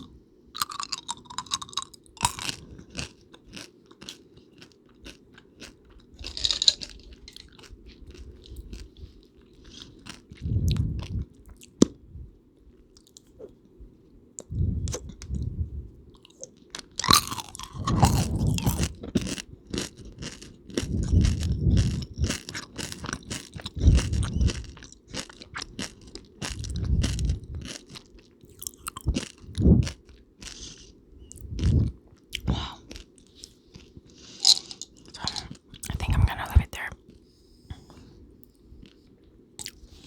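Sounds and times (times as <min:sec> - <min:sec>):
crunchy candy chewing: 0:00.0 - 0:12.0, 0:16.1 - 0:37.0, 0:39.6 - 0:40.0
low mouth sounds: 0:17.6 - 0:19.0.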